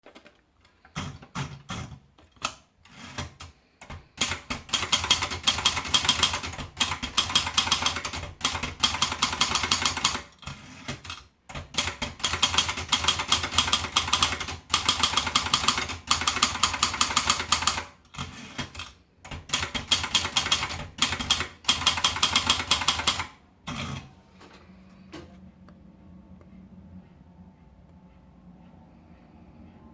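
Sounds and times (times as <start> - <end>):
typewriter keystrokes: 0.0 - 24.1.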